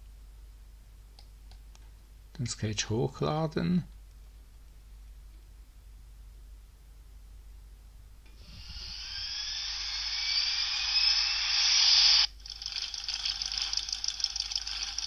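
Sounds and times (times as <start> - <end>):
rising hissing whoosh with whistles: 8.4 - 12.3.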